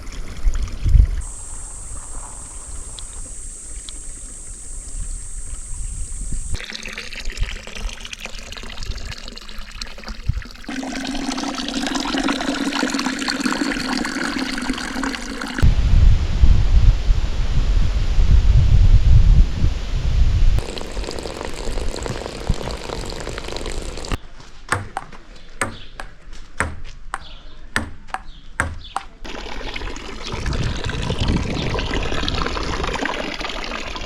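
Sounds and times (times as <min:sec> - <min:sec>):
water running and trickling: 0:00.0 - 0:15.6, 0:20.6 - 0:24.2, 0:29.3 - 0:34.0
loud low rumble: 0:15.6 - 0:20.6.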